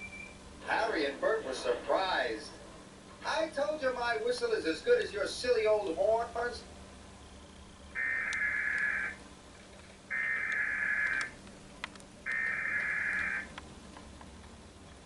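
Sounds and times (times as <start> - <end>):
digital data tone bursts: 7.9 - 9.2, 10.1 - 11.3, 12.3 - 13.5.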